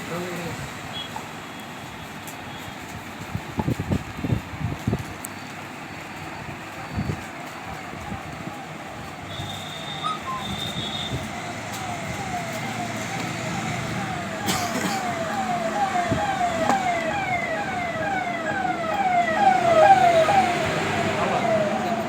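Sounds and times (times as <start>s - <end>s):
electronic siren sweeping: 6.7s - 22.0s
short high beep: 9.4s - 11.1s.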